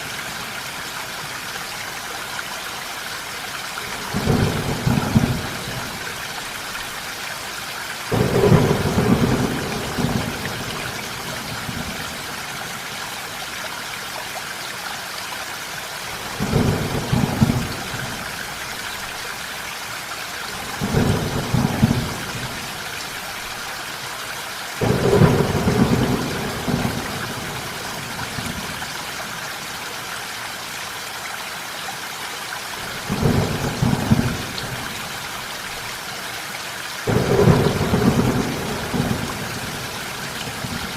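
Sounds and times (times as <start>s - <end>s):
steady rain: 0.0s - 40.9s
thunder rumbling: 4.1s - 6.0s, 8.1s - 11.9s, 24.8s - 27.7s, 37.1s - 40.9s.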